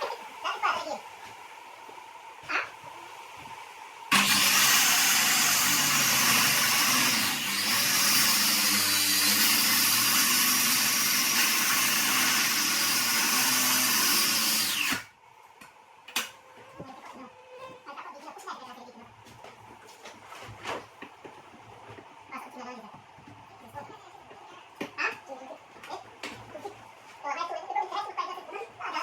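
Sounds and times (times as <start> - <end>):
power tool running: 4.1 - 15.1.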